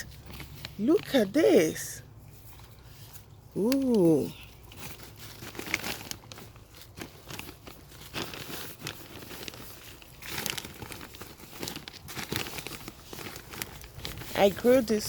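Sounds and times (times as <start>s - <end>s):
plastic bag rustling: 0.0s - 15.0s.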